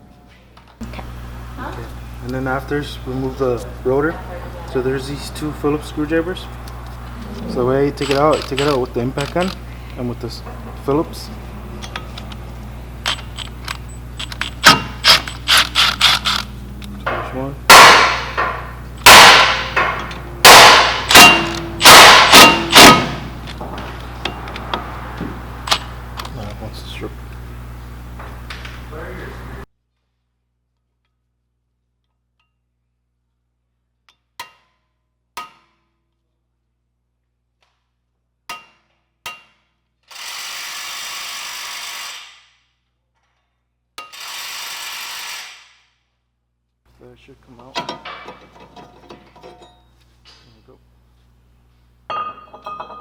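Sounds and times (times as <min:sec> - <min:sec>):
hammer striking impact driver: 0:08.0 - 0:09.6, 0:13.0 - 0:16.5, 0:17.1 - 0:24.9, 0:44.0 - 0:46.0
sharp metallic knocks: 0:17.1 - 0:24.9.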